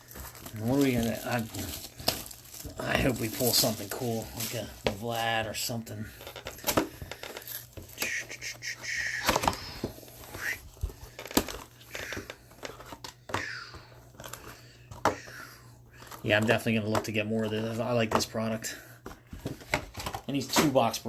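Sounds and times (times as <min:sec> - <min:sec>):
packaging crinkling and tearing: 0:00.0 - 0:08.1
cards and wrappers handled: 0:00.0 - 0:21.0.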